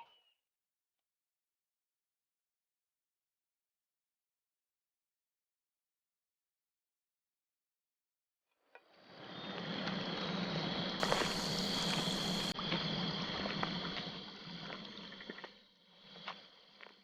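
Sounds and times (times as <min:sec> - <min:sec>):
steady high hum: 0:09.1 - 0:14.4.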